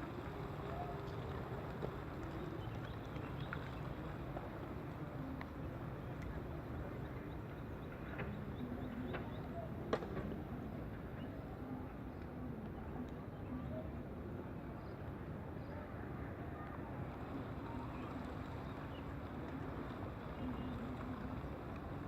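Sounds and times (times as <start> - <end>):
low background noise: 0.0 - 22.0.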